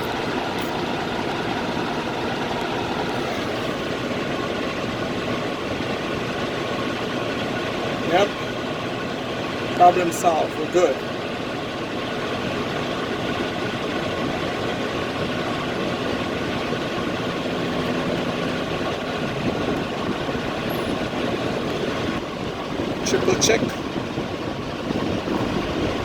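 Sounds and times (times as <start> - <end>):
diesel truck engine idling: 0.0 - 26.0.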